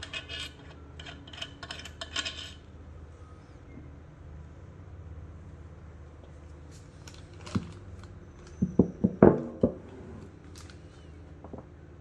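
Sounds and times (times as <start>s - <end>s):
hard parts knocking and clunking: 8.6s - 9.9s.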